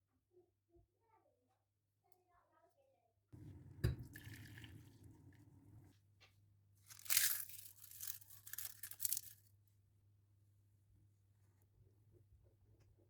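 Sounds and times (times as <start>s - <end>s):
crisp material crinkling: 6.8s - 9.4s.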